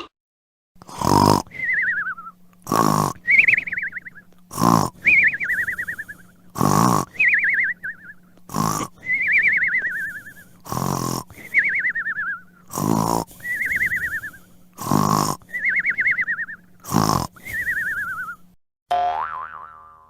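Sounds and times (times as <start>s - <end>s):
cartoon snoring: 0.8s - 18.4s.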